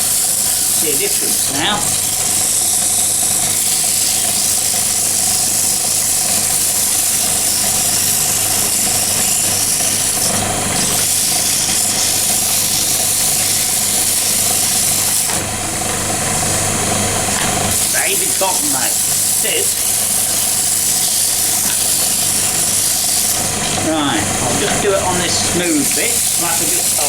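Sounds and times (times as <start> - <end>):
lathe motor humming: 0.0 - 27.0
sandpaper hissing on wood: 25.7 - 27.0.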